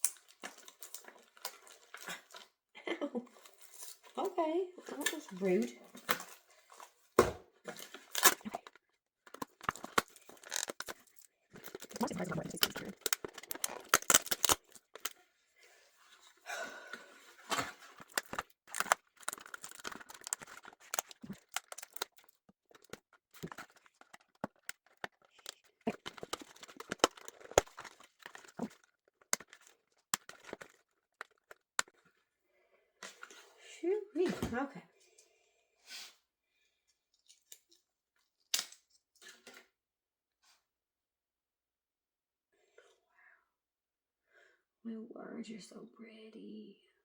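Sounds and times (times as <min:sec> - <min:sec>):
plastic and cardboard rustling: 0:07.7 - 0:15.2, 0:17.2 - 0:32.1.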